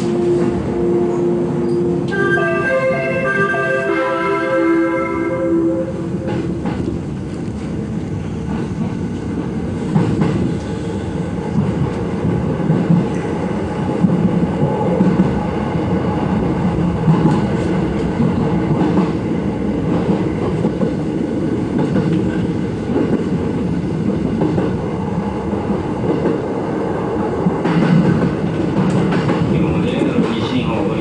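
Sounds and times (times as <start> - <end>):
train running noise: 0.0 - 31.0.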